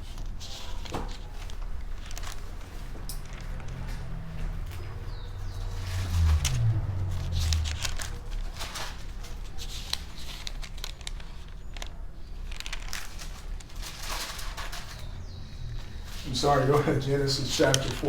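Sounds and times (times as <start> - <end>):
thin paper pages rustling: 0.0 - 3.6, 7.6 - 18.0.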